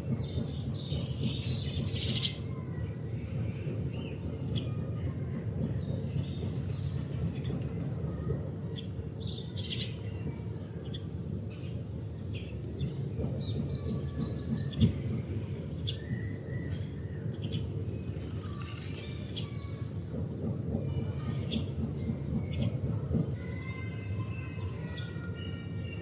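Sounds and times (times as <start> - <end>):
sparrow chirping: 0.9 - 2.5, 9.4 - 10.1.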